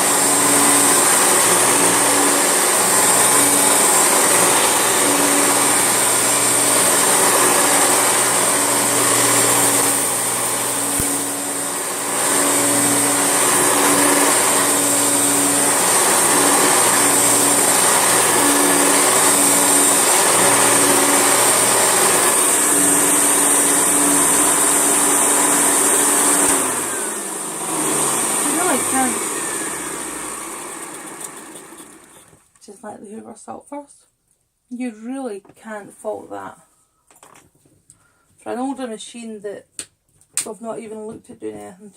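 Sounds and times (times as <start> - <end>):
vacuum cleaner motor whining: 0.0 - 32.5.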